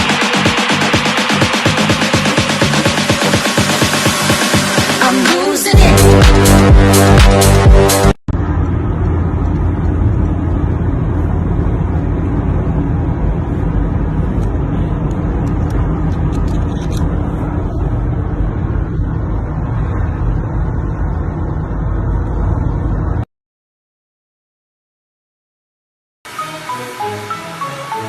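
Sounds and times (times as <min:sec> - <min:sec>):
loud low rumbling: 0:05.8 - 0:23.2.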